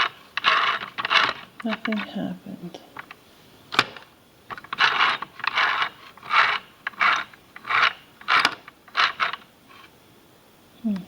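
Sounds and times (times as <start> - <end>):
toy sewing machine clicking and scraping: 0.0 - 2.2, 3.8 - 9.9.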